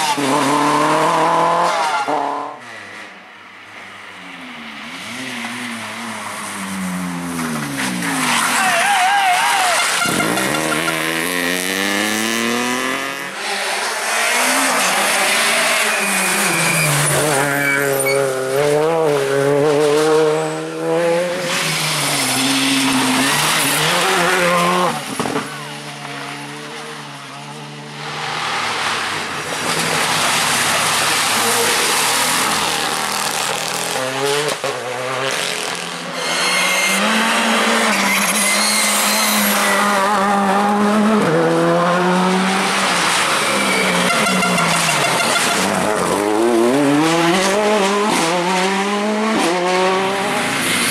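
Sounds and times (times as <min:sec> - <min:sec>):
rally car engines revving: 0:00.0 - 0:50.9
tyre squeal: 0:08.0 - 0:11.4, 0:14.3 - 0:18.4, 0:36.0 - 0:40.0, 0:43.1 - 0:46.3.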